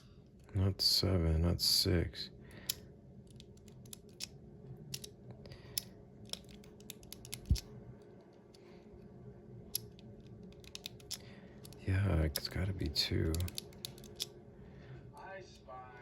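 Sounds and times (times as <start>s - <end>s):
low steady hum: 0.0s - 16.0s
padlock wheels clicking: 2.6s - 7.7s, 9.7s - 11.9s, 13.1s - 14.3s.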